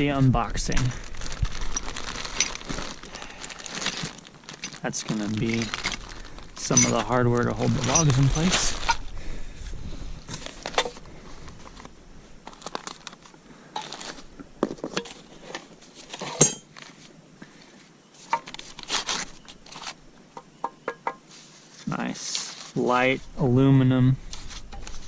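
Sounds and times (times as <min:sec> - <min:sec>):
packing material crinkling: 0:00.3 - 0:09.1, 0:10.3 - 0:17.1, 0:18.2 - 0:20.0.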